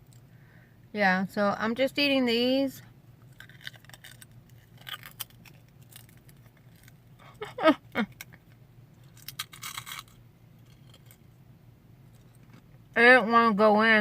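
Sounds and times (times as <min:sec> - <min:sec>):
potato crisps crunching: 0:03.3 - 0:07.3, 0:07.9 - 0:11.3.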